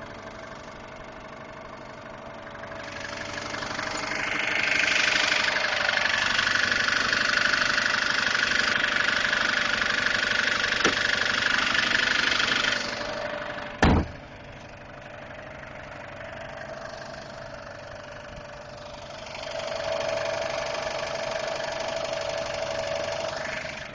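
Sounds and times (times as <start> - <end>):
car engine idling with ticking: 0.0 - 23.9
sharp loud knock: 13.8 - 14.2.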